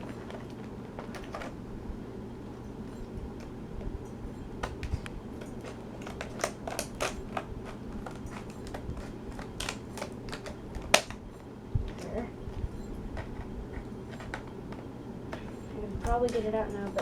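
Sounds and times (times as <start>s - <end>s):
plastic packaging clicking and crackling: 0.0s - 1.6s, 4.6s - 17.0s.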